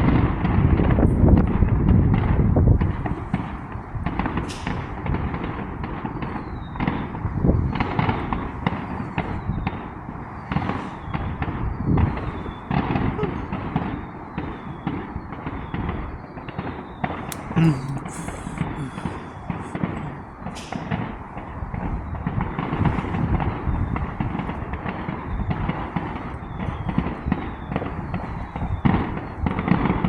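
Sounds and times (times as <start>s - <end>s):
fireworks bangs and crackles: 0.0s - 30.0s
falling firework whistles: 6.1s - 17.5s, 19.5s - 29.9s.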